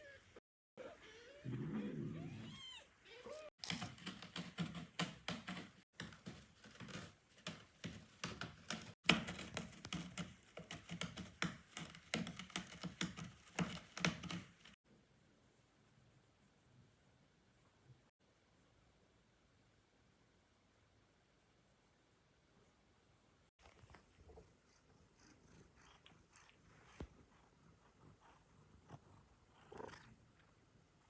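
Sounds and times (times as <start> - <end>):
rapid small clicks and taps: 3.6 - 14.8.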